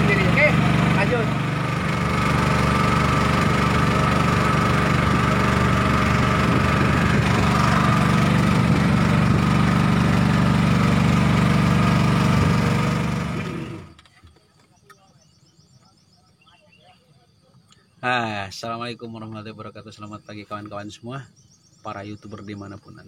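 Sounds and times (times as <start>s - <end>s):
small boat engine running: 0.0s - 14.4s.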